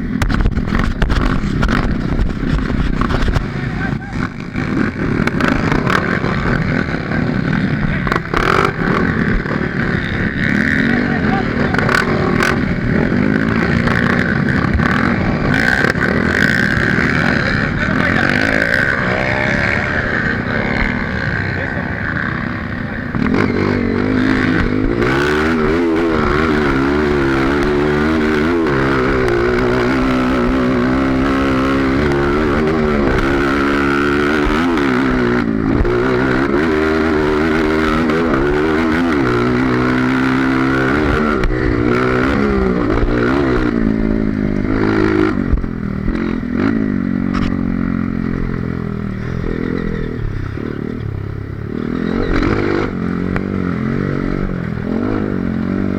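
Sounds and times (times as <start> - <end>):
motorbike engine revving: 0.0 - 55.9.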